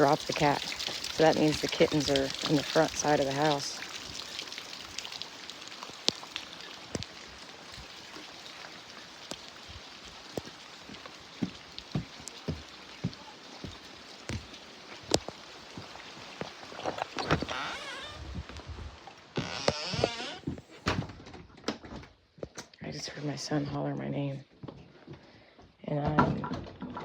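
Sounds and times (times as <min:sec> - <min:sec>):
heavy rain falling: 0:00.0 - 0:20.5
raindrops tapping close by: 0:00.0 - 0:21.0.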